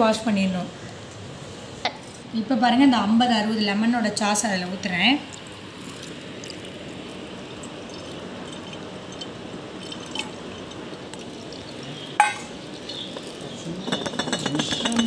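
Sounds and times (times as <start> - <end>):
juice pouring into glass bottle: 4.9 - 14.9
glass clinks and taps: 12.2 - 15.0.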